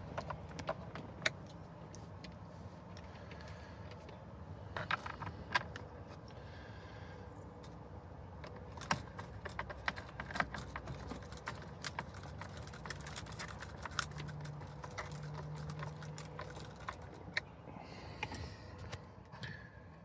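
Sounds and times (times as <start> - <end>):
plastic clicks and rattles: 8.4 - 17.5.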